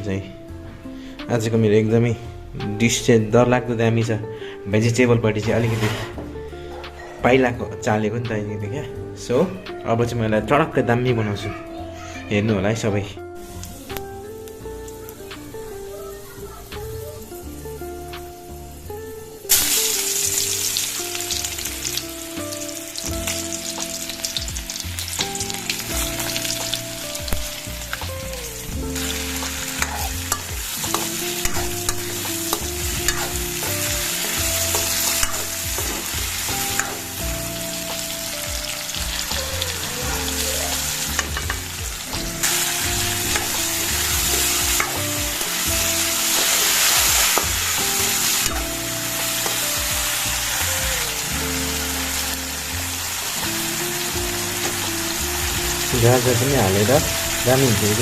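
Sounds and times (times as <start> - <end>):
stirring scraping and clatter: 5.5 - 6.2, 29.3 - 37.1
vegetables sizzling in oil: 13.4 - 58.0.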